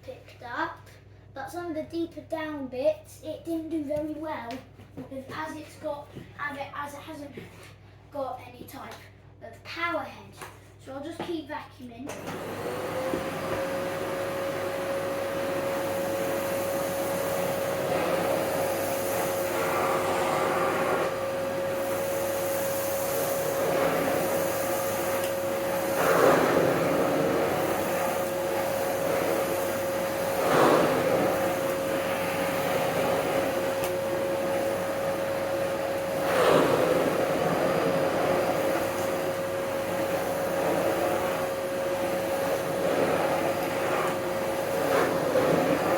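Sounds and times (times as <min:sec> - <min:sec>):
vacuum cleaner motor whine: 0:12.1 - 0:45.9.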